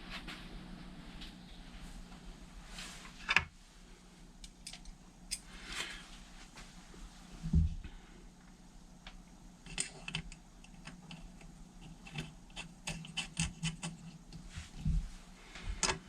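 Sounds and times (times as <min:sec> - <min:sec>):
small metal parts clicking: 0:04.4 - 0:05.4, 0:09.6 - 0:14.2.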